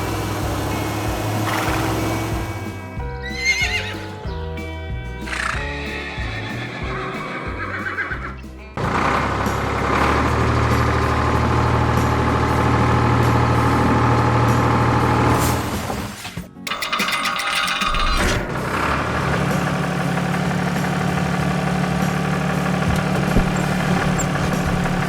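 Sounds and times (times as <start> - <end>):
cartoon background music: 0.0 - 25.0
horse whinnies: 3.2 - 4.2, 5.3 - 8.4.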